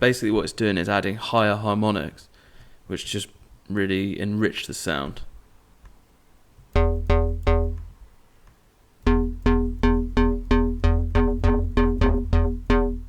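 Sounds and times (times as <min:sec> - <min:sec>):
heavy bass: 0:06.8 - 0:08.0, 0:09.1 - 0:13.0
synth bass pluck notes: 0:06.8 - 0:08.0, 0:09.0 - 0:13.0.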